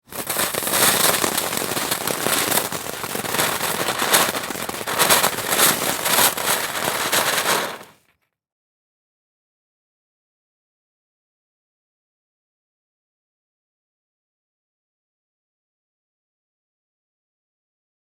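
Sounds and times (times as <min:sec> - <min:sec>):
firework fountain crackling: 0:00.0 - 0:08.0.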